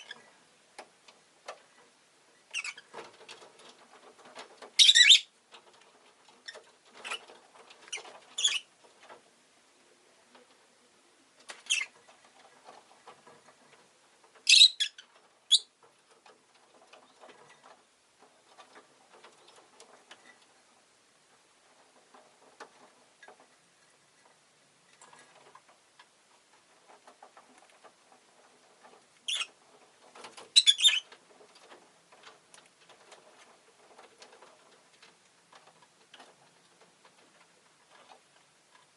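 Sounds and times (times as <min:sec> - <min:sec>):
soft scratching and pattering: 0:00.0 - 0:04.8, 0:05.4 - 0:38.9
lovebird chirping: 0:02.4 - 0:02.8, 0:04.8 - 0:05.3, 0:07.9 - 0:08.7, 0:14.4 - 0:15.7, 0:29.3 - 0:29.5, 0:30.5 - 0:31.0.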